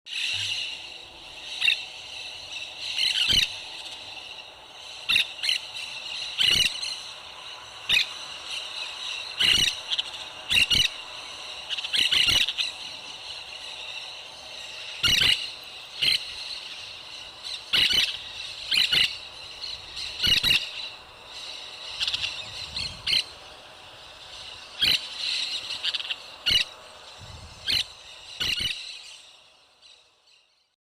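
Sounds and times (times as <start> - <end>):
faint steady hum: 0.2 - 30.7
parrot squawking: 15.0 - 16.2, 17.5 - 20.8.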